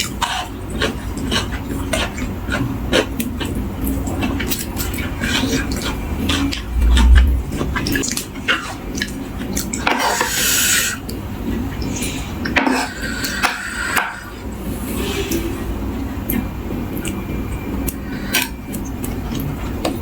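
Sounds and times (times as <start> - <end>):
crunchy chewing: 0.0 - 7.3
heavy low thump: 6.5 - 8.1.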